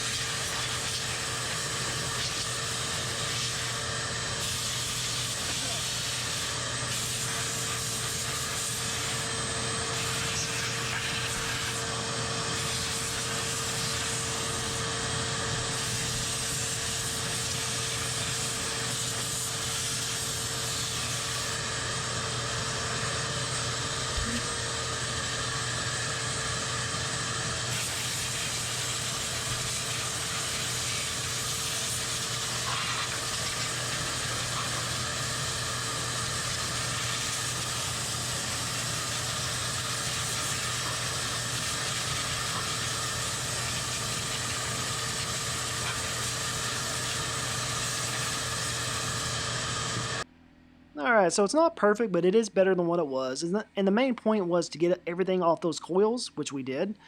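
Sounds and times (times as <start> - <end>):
vacuum motor hum: 0.0 - 50.4
compressed air hissing: 4.4 - 9.3, 10.0 - 14.8, 15.7 - 21.6, 27.7 - 49.7.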